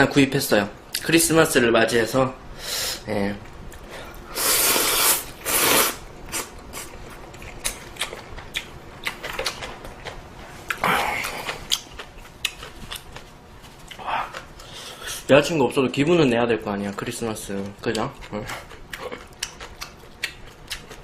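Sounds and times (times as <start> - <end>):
slurping noodles: 4.3 - 6.5
chewing clicks: 17.6 - 21.0.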